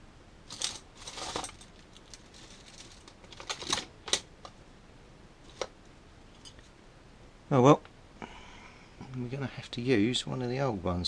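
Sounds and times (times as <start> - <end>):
small metal parts clinking: 0.5 - 4.3.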